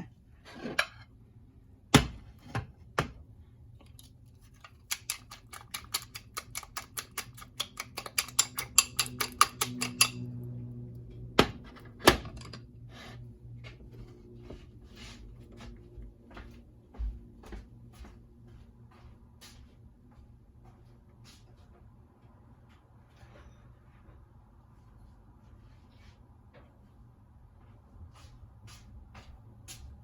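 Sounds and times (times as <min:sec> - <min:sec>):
utensil clicking against bowl: 0:04.6 - 0:10.2.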